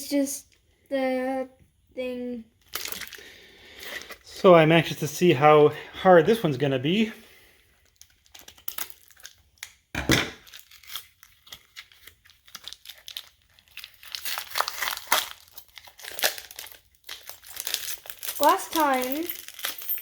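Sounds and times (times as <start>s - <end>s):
packaging tearing and crinkling: 2.6s - 3.3s, 7.8s - 9.8s, 10.4s - 19.8s.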